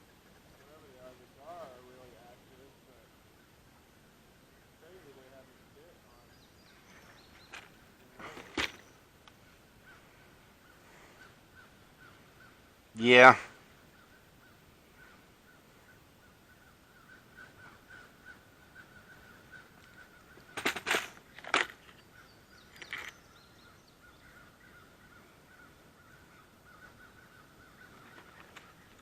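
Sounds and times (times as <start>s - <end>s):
crows cawing: 9.8s - 12.6s, 24.0s - 29.0s.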